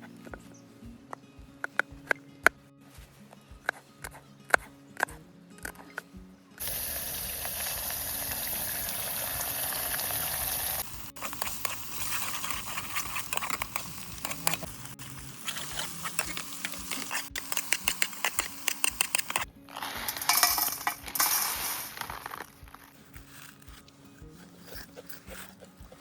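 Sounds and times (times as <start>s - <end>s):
steady sizzling hiss: 0.0s - 26.0s
cookware and utensils clinking: 6.6s - 22.6s.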